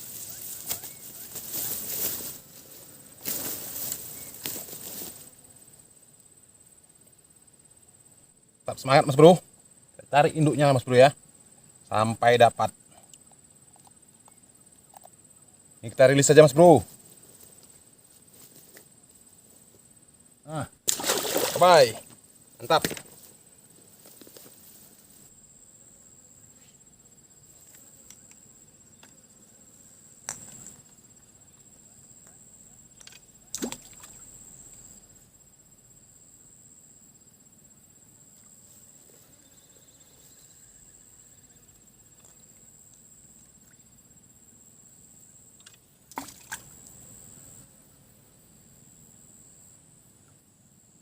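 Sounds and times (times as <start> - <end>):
high-pitched insect drone: 0.0 - 2.5
water splashes or knocks: 20.9 - 22.1, 33.5 - 34.2.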